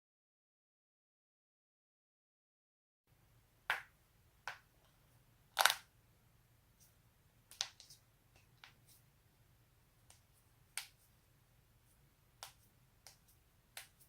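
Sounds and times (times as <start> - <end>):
spinal joints cracking: 5.6 - 5.8.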